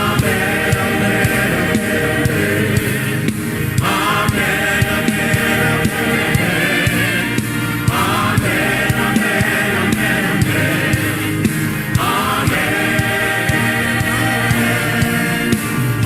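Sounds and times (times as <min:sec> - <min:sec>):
band with steady drum beat: 0:00.0 - 0:16.0
choir singing: 0:00.0 - 0:16.0.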